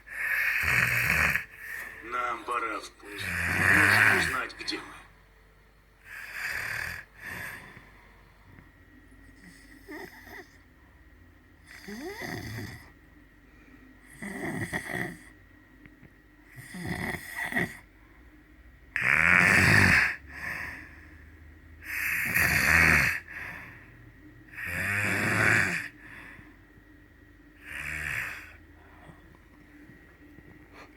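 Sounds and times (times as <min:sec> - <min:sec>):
weak breath: 0:00.0 - 0:02.2, 0:06.0 - 0:08.7, 0:20.0 - 0:22.4, 0:23.2 - 0:25.0, 0:25.8 - 0:26.8
person snoring: 0:00.0 - 0:04.8, 0:06.1 - 0:07.8, 0:11.6 - 0:12.9, 0:14.1 - 0:15.3, 0:16.5 - 0:17.8, 0:19.0 - 0:21.2, 0:21.8 - 0:23.9, 0:24.5 - 0:26.4, 0:27.6 - 0:29.4.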